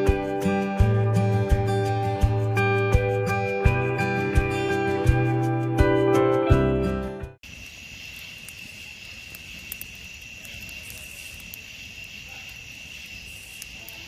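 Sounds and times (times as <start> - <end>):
insect chorus trilling: 7.4 - 14.0.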